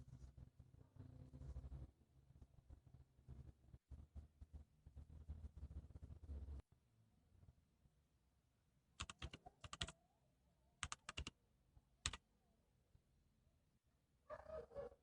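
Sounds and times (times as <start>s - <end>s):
keyboard typing: 9.0s - 10.0s, 10.8s - 11.4s.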